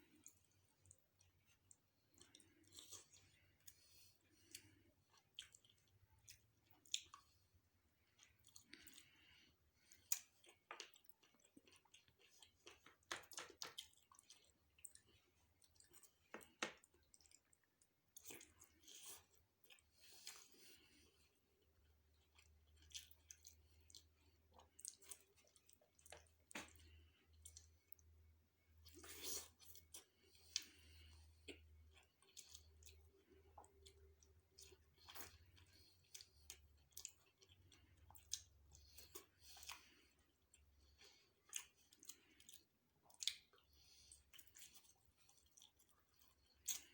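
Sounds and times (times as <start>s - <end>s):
person chewing food: 0.0s - 46.9s.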